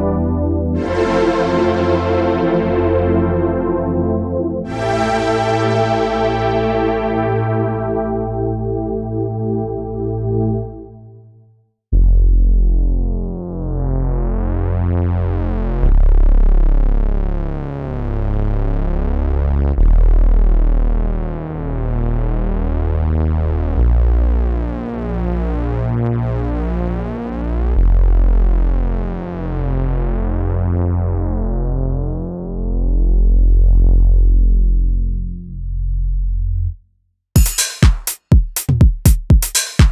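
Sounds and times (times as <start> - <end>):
deep bass note: 0.0 - 11.3, 11.9 - 25.6, 27.7 - 36.8
synthesizer pad chords: 0.0 - 11.5.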